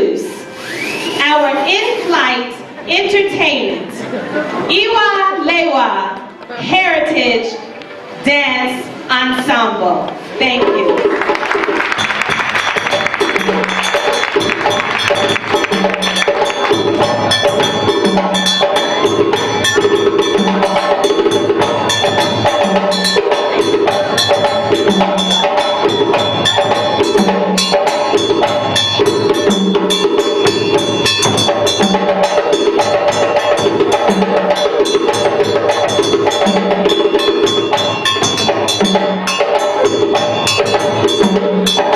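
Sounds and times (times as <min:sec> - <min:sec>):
drum ensemble playing: 0:10.4 - 0:41.9
fast clicking percussion: 0:10.6 - 0:41.9.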